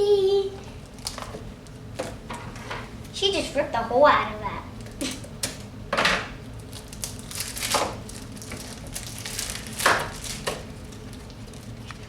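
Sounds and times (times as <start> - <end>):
plastic packaging crinkling: 0.9 - 1.4, 6.6 - 12.0.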